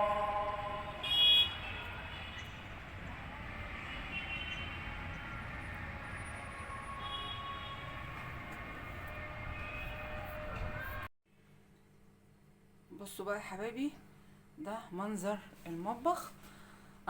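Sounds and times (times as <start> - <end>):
car horn toots: 0.0 - 2.4, 6.8 - 8.1
traffic noise: 0.0 - 11.1.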